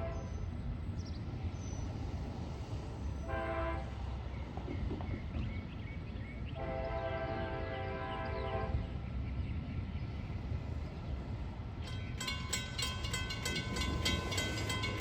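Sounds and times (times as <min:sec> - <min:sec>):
train air horn blasts: 0:00.0 - 0:00.4, 0:03.2 - 0:04.0, 0:06.6 - 0:08.8
low rumble of train: 0:00.0 - 0:15.0.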